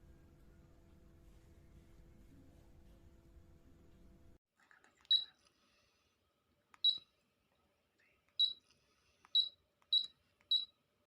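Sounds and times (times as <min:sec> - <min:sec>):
short high electronic beeps: 0:06.8 - 0:07.0, 0:08.4 - 0:08.6, 0:09.4 - 0:10.7.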